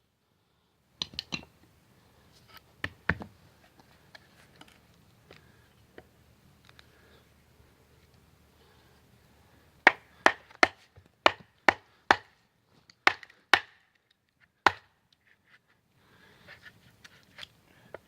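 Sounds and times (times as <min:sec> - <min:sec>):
blade chopping wood: 0:09.9 - 0:12.3, 0:13.1 - 0:13.8, 0:14.7 - 0:14.9.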